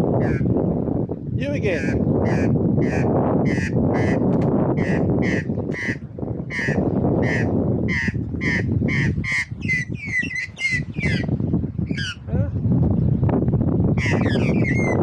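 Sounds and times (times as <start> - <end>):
magpie squawking: 1.8 - 4.2, 4.8 - 11.3, 11.9 - 12.2.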